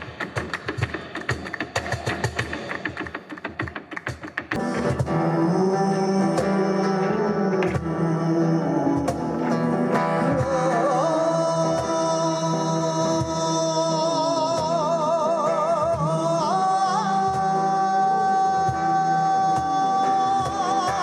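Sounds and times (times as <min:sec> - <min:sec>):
plucked strings: 0:04.5 - 0:21.0.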